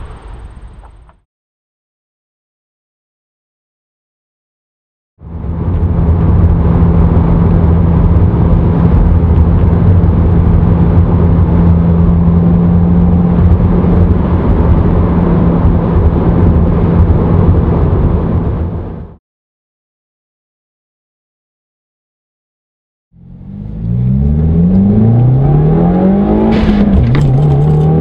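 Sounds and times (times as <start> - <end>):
car exhaust deep steady tone: 0.0 - 1.2, 5.2 - 19.2, 23.2 - 28.0.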